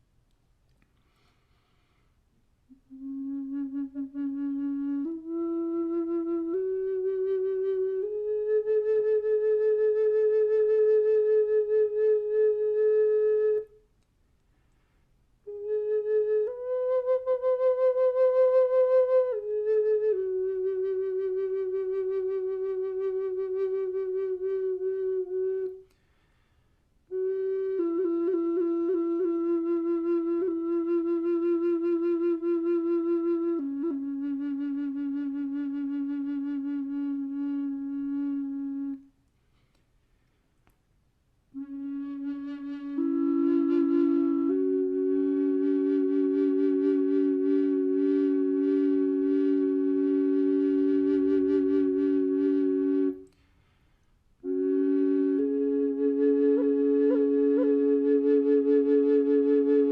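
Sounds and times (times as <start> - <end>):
flute-like wind instrument: 2.7 - 13.9, 15.4 - 26.0, 27.1 - 39.2, 41.6 - 53.4, 54.4 - 59.9.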